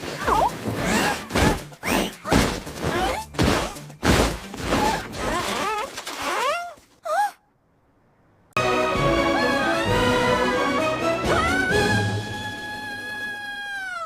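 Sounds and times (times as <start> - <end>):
background music: 0.0 - 5.4, 8.6 - 14.0
cartoon thuds and crashes: 0.8 - 5.6.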